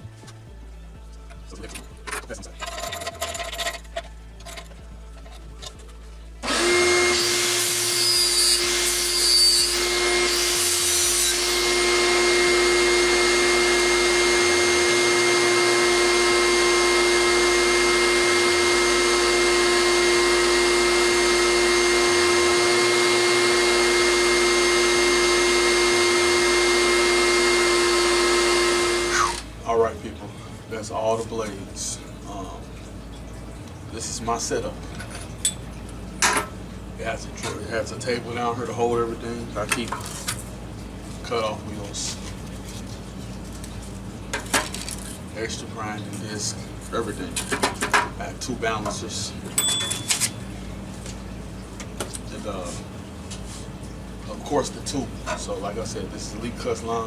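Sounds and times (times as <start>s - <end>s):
angle grinder whining: 6.4s - 29.6s
handling knocks and clatter: 42.2s - 45.2s, 48.9s - 50.4s.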